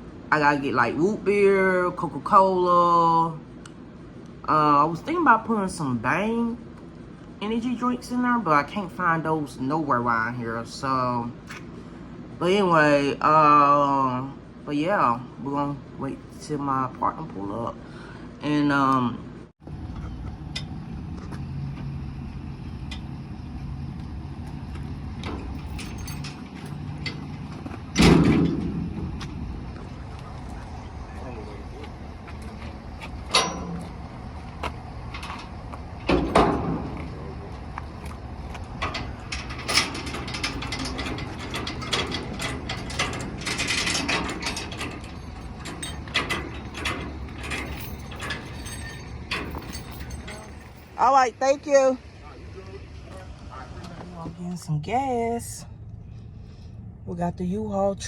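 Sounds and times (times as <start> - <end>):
low steady hum: 0.0 - 58.0
vehicle engine running: 19.6 - 58.0
door shut hard: 27.9 - 29.5.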